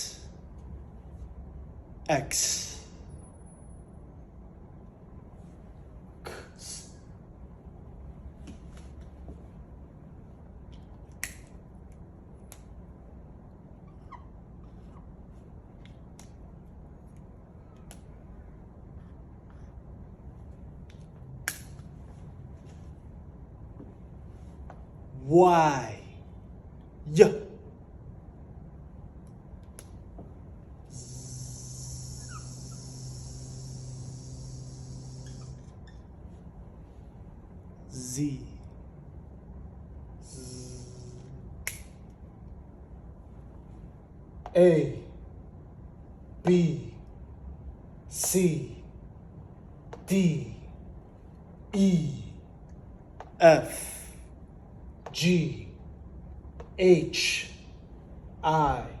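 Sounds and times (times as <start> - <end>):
low background hum: 0.0 - 59.0
man buzzing a long z: 30.9 - 35.9, 40.2 - 41.6.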